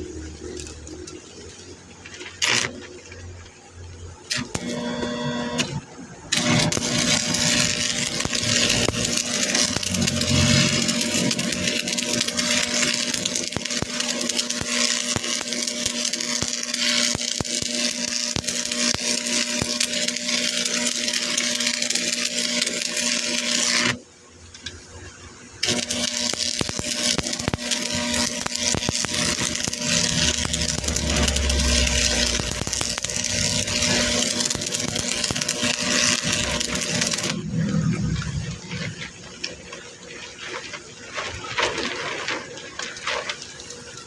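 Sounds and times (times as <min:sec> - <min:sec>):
metalworking machine hum: 0:00.0 - 0:40.4
quick crackling clicks: 0:04.3 - 0:04.8, 0:05.5 - 0:24.0, 0:25.6 - 0:39.9.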